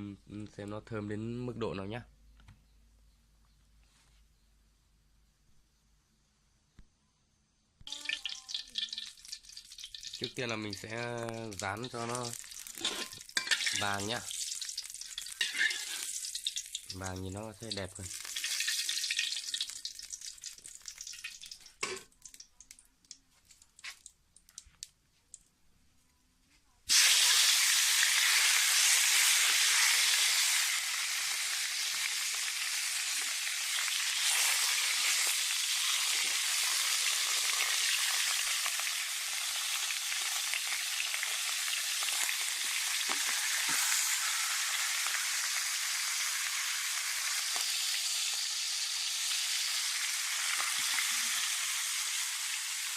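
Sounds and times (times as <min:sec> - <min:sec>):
meat sizzling in hot oil: 0:07.9 - 0:22.4, 0:26.9 - 0:52.9.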